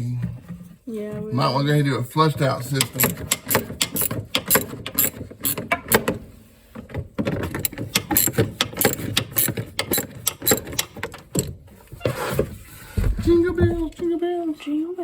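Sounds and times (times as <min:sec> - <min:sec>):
ratchet wrench clicking: 0:02.8 - 0:06.1, 0:07.6 - 0:11.5.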